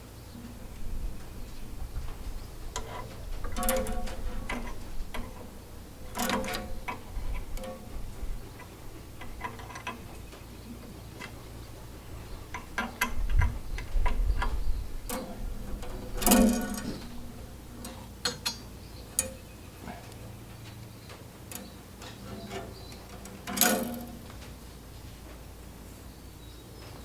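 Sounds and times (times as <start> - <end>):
metal clatter: 2.8 - 10.2, 15.0 - 19.4, 21.6 - 24.6
hand tools clicking and clinking: 15.1 - 20.2.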